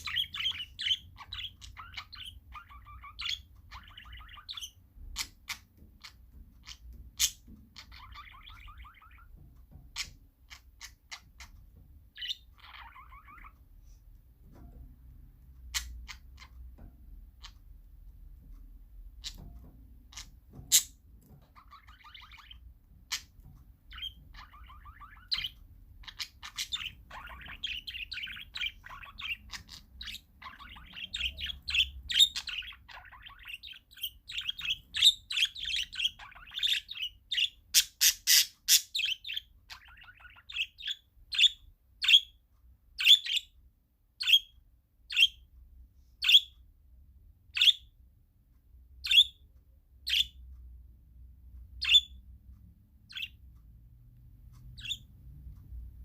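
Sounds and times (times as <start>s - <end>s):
parakeets chirping: 0.0s - 13.8s, 15.4s - 17.9s, 19.0s - 48.0s, 48.7s - 56.0s.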